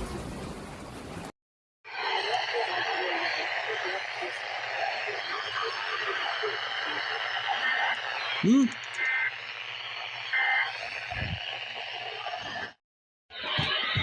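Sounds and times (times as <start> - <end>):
radio static hissing: 1.9 - 12.8
two-tone electronic data bursts: 4.8 - 9.5, 10.3 - 11.4.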